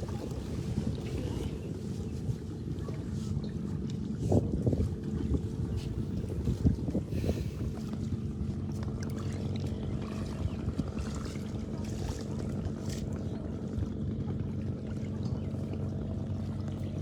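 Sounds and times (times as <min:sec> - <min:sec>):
small engine droning: 0:00.0 - 0:17.0
splashes: 0:08.8 - 0:13.2.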